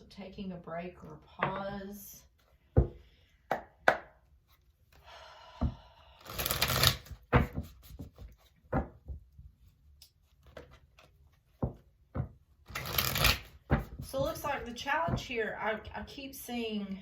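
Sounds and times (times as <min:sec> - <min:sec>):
cards sliding rustle: 0:06.3 - 0:08.6, 0:12.7 - 0:14.0
cards tapping and clicking on table: 0:06.4 - 0:09.2.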